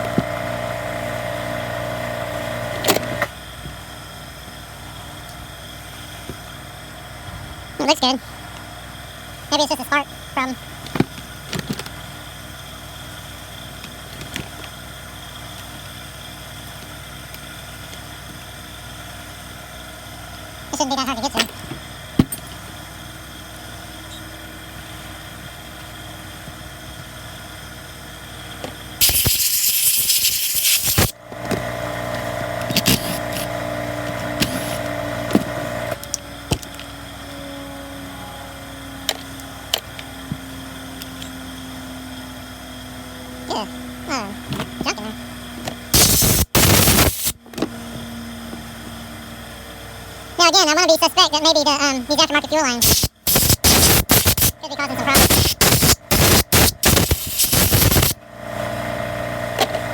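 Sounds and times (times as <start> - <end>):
machine humming: 30.9 - 39.8, 52.8 - 59.3.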